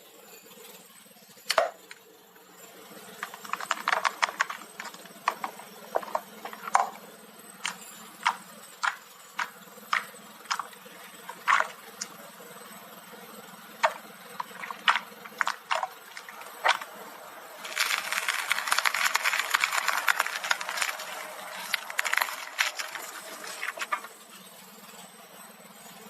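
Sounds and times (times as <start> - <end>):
slime crackling and popping: 3.2 - 7.0, 7.6 - 12.1, 13.8 - 17.0, 17.6 - 24.1.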